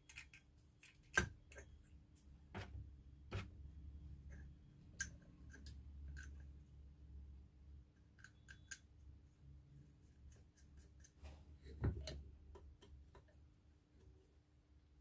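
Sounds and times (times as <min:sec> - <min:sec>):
small metal parts clicking: 0:00.0 - 0:01.8, 0:08.1 - 0:08.9.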